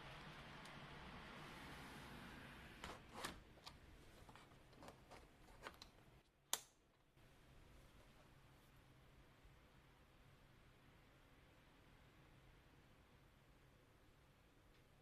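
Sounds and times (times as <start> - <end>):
light rain: 0.0 - 2.8.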